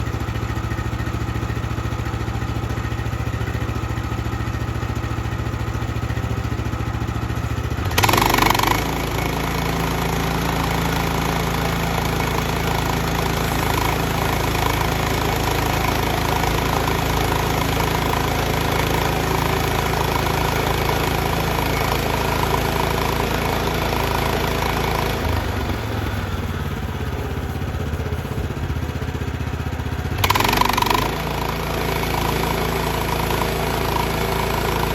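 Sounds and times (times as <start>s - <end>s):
sawmill engine running: 0.0s - 34.9s.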